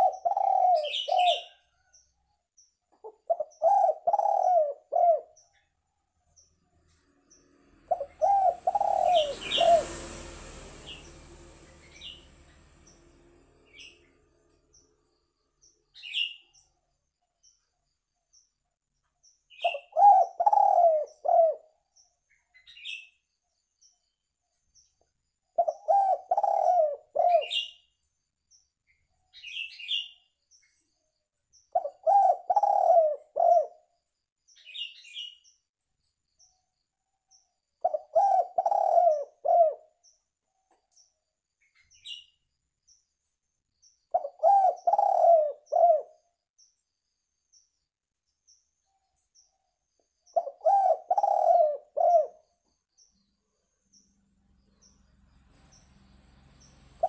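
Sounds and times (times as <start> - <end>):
dove cooing: 0.0 - 1.7, 3.0 - 5.4, 7.9 - 10.2, 19.6 - 21.7, 25.6 - 27.7, 31.8 - 33.9, 37.8 - 39.9, 44.1 - 46.2, 50.4 - 52.4
small bird chirping: 0.0 - 57.0.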